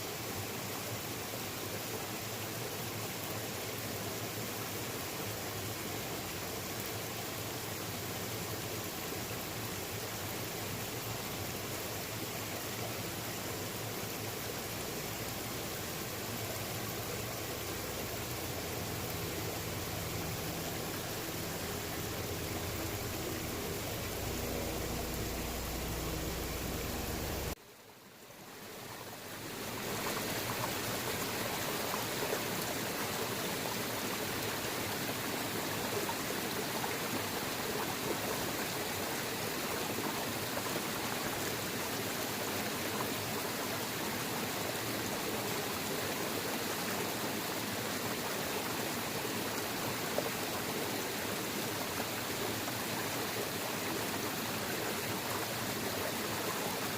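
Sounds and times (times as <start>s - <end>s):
waterfall rushing: 14.2s - 27.6s.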